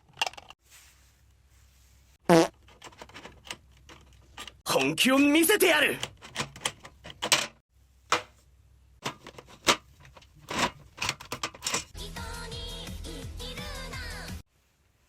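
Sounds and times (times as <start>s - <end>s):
background music: 12.0s - 14.4s.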